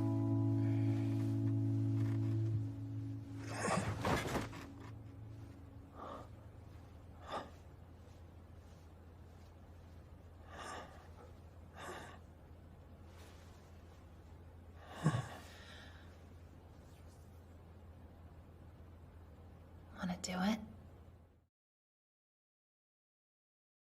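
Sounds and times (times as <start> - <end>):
soft background music: 0.0 - 8.8
low steady hum: 0.0 - 21.5
person gasping and sighing: 3.4 - 4.4.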